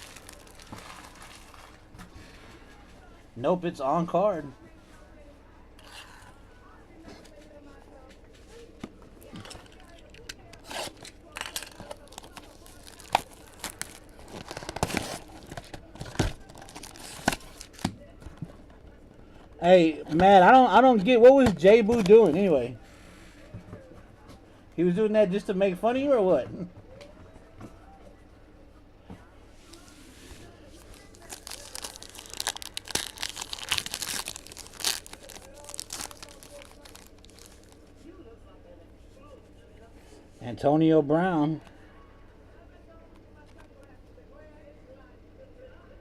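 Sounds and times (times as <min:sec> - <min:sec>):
wrappers crinkling and tearing: 0:00.0 - 0:01.9, 0:09.2 - 0:17.9, 0:30.6 - 0:37.9.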